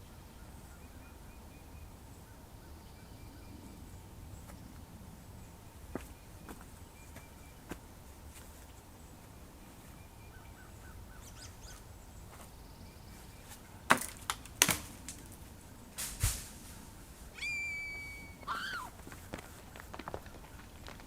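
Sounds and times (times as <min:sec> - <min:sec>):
twigs snapping: 0:13.9 - 0:15.4
high whistling tone: 0:17.4 - 0:18.6
footsteps crunching on forest litter: 0:18.5 - 0:21.0.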